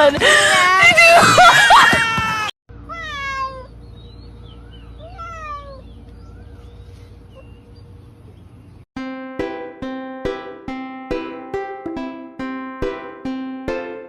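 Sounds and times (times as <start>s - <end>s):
cat meowing: 2.8s - 3.8s, 5.0s - 5.9s.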